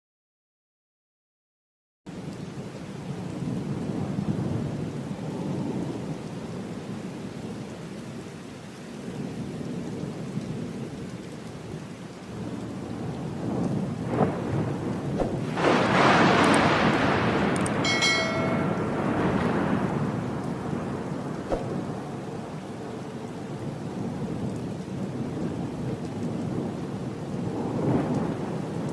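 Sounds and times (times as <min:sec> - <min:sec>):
heavy rain: 0:02.1 - 0:28.9
low rolling thunder: 0:03.2 - 0:07.6, 0:12.3 - 0:28.9
loud close thunderclap: 0:13.4 - 0:22.6, 0:27.4 - 0:28.9
sharp thunder cracks: 0:14.0 - 0:22.3.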